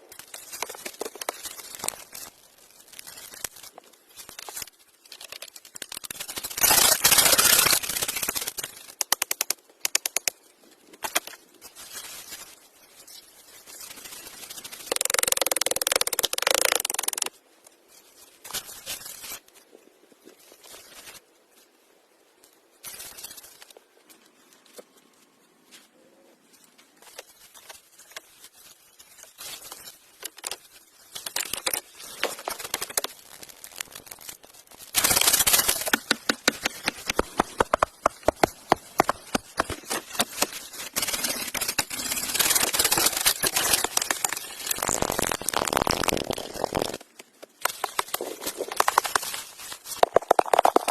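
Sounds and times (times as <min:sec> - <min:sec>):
dense sharp crackles and snaps: 0:00.0 - 0:19.6, 0:26.6 - 0:50.9
hands scraping and rustling materials: 0:22.4 - 0:50.9.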